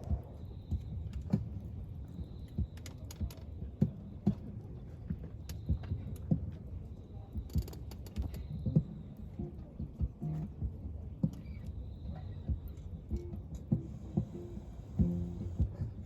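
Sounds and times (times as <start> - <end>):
small clicks and knocks: 7.5 - 8.5
steady low hum: 8.4 - 16.0.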